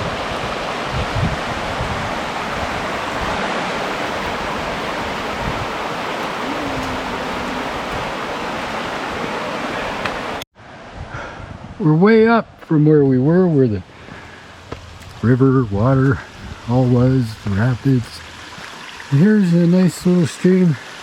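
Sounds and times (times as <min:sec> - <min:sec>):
river rapids rushing: 0:00.0 - 0:10.4.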